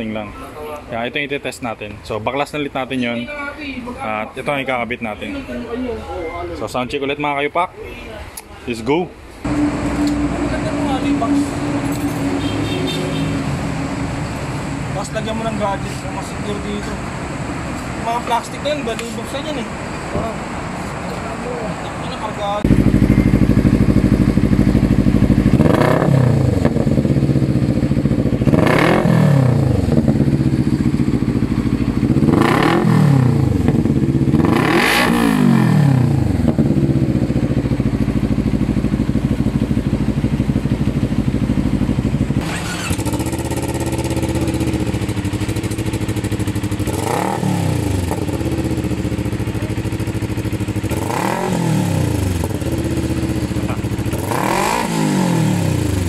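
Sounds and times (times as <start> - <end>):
motorcycle engine revving: 9.4 - 17.2, 22.6 - 56.0.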